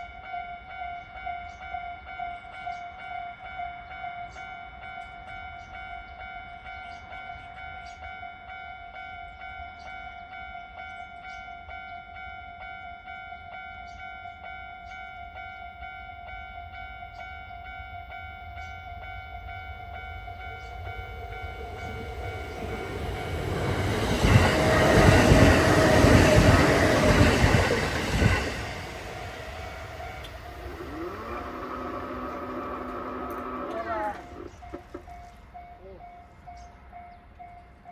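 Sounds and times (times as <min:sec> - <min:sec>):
electric train passing: 0:00.0 - 0:37.9
level crossing bell ringing: 0:18.2 - 0:36.2.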